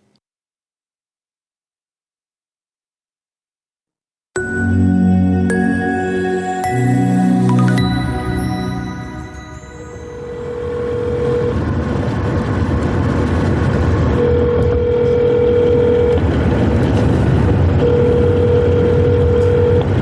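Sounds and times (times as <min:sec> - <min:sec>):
phone ringback tone: 0:04.4 - 0:11.6, 0:17.8 - 0:20.0.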